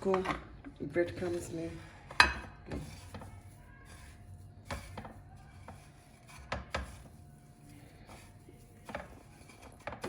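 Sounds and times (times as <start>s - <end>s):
light knocks against a dish: 4.7s - 5.8s, 6.4s - 7.1s.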